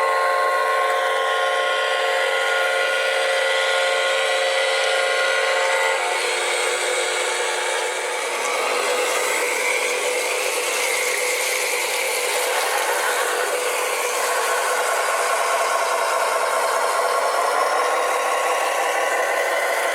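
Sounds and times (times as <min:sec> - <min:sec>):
small electric motor whine: 0:00.0 - 0:19.9.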